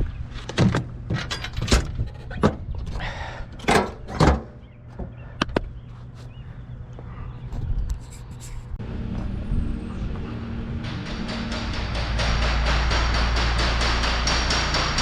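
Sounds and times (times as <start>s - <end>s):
sharp knocks and clunks: 3.6s - 5.7s, 10.8s - 15.0s.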